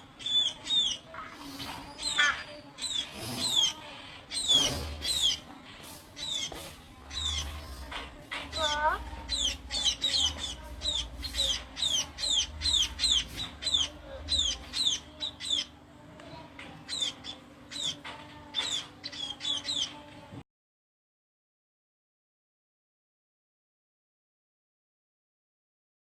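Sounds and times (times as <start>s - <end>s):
small birds chirping: 0.0s - 20.3s.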